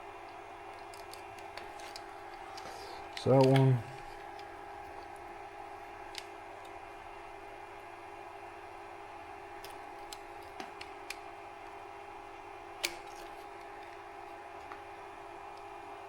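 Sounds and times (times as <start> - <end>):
steady background hum: 0.0 - 16.0
wires and connectors clicking: 0.2 - 5.3, 6.0 - 6.8, 9.6 - 11.8, 12.8 - 14.9.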